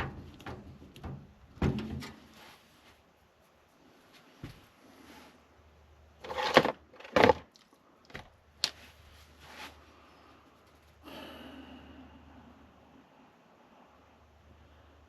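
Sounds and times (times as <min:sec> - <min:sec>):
soft scraping rustle: 0:02.2 - 0:05.5, 0:08.7 - 0:11.0.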